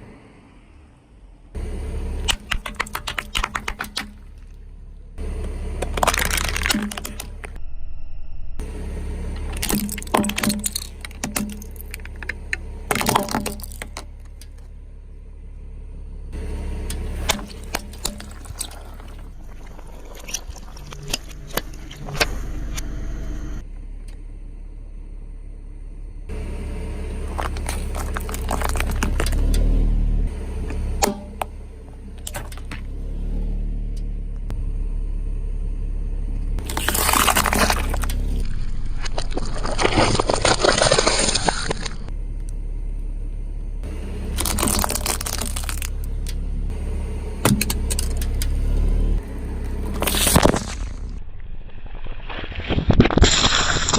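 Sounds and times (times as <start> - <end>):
engine and tyre rumble: 0.0 - 53.9
tyre crushing brittle objects: 2.3 - 4.7, 5.8 - 7.6, 9.4 - 14.7, 16.9 - 22.3, 27.2 - 29.8, 30.7 - 33.0, 36.6 - 42.1, 44.3 - 46.4, 47.5 - 51.2, 51.8 - 53.9.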